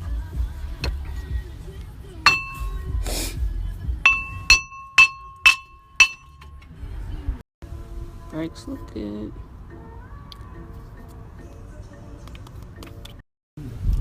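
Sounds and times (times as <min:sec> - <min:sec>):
metal striking brake rotor: 0:02.3 - 0:02.9, 0:04.1 - 0:06.6.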